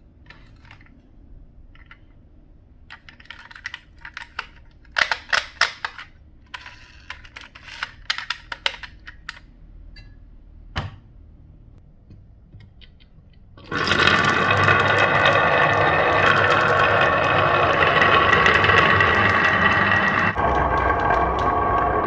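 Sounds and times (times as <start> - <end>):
marbles rolling rumble: 13.6 - 22.0
marbles clicking through wooden run: 13.7 - 22.0.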